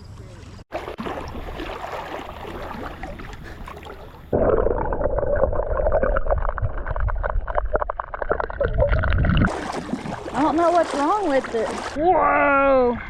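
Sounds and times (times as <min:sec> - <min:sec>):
muffled water rushing with crackles: 0:00.2 - 0:12.0
water washing around kayak: 0:00.7 - 0:04.3, 0:09.5 - 0:12.0.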